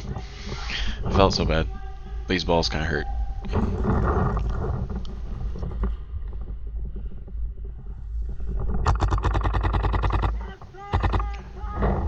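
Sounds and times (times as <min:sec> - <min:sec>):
wind on microphone: 0:00.0 - 0:12.0
rapid paintball marker shots: 0:08.9 - 0:11.4.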